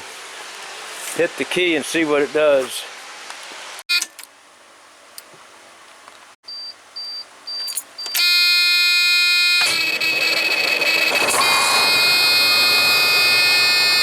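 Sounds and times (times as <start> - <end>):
warning buzzer: 8.1 - 14.0
diesel engine turning over: 9.5 - 14.0.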